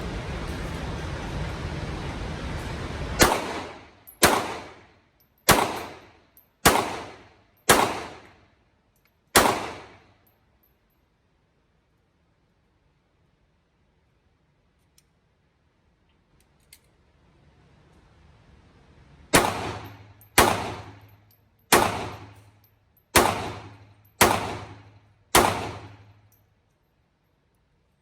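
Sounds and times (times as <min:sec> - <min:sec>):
pistol shots: 0:03.2 - 0:04.8, 0:05.5 - 0:08.3, 0:09.4 - 0:10.1, 0:19.3 - 0:21.1, 0:21.7 - 0:22.5, 0:23.1 - 0:26.2.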